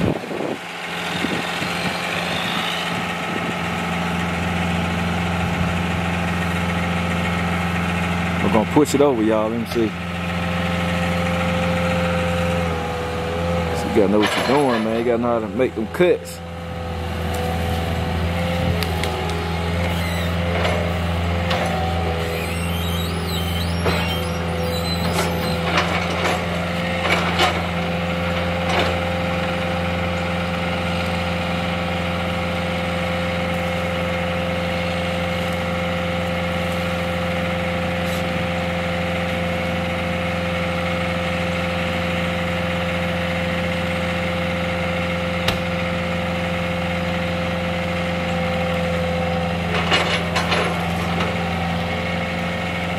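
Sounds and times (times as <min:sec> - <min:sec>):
heavy machine engine running: 0:00.0 - 0:52.9
short knocks and cracks: 0:45.4 - 0:45.7.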